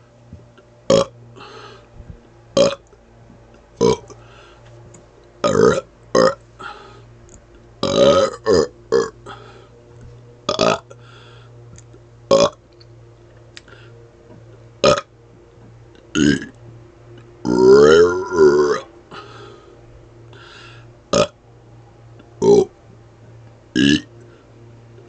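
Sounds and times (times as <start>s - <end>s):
man burping: 0.9s - 1.1s, 2.6s - 2.8s, 3.8s - 4.2s, 5.4s - 6.8s, 7.8s - 9.2s, 10.5s - 10.9s, 12.3s - 12.6s, 14.8s - 15.1s, 16.2s - 16.6s, 17.4s - 18.9s, 21.1s - 21.4s, 22.4s - 22.7s, 23.8s - 24.1s.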